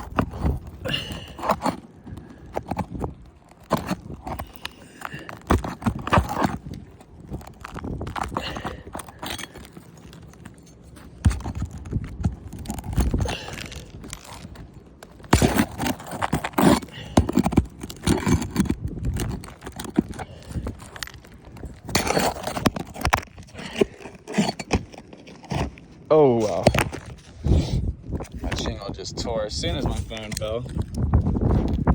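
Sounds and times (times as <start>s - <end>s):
pry tool knocking and scraping: 0.0s - 6.8s, 7.4s - 25.7s.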